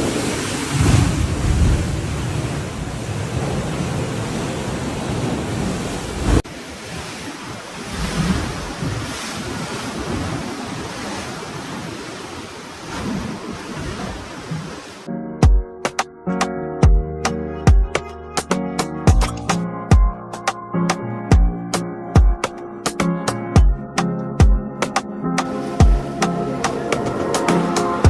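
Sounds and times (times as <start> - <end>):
wind buffeting microphone: 0.0 - 14.9
sea waves washing: 0.0 - 15.1, 24.8 - 28.0.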